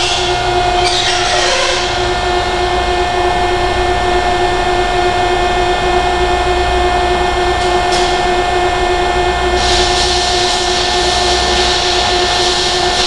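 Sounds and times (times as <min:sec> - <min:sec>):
industrial machinery drone: 0:00.0 - 0:13.0
hiss: 0:09.6 - 0:13.0.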